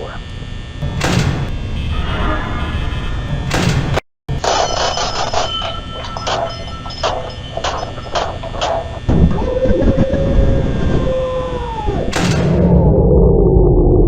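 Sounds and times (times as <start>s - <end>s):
distorted boom with rumble: 9.0s - 14.0s
low rumble with falling tone: 9.1s - 14.0s.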